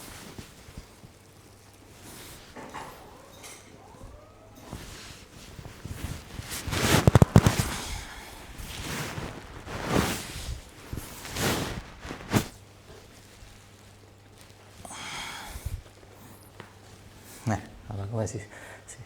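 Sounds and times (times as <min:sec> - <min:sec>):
body movement sounds: 0:00.0 - 0:17.7
spinal joints cracking: 0:06.3 - 0:10.0.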